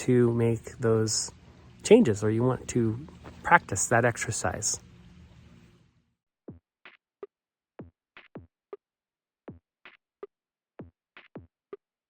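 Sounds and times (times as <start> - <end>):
drum machine beat: 7.8 - 8.5, 10.8 - 11.5.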